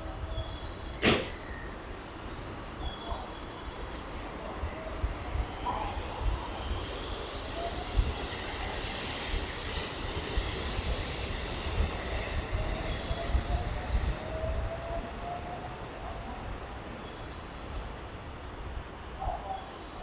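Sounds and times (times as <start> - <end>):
train running on rails: 0.0 - 20.0.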